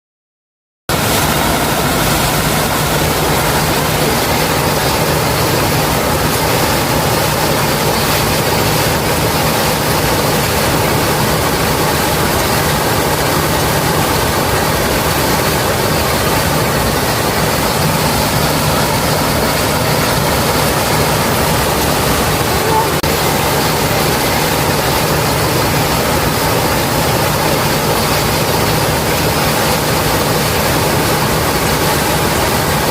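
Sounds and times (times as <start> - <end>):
waterfall rushing: 0.9 - 32.9.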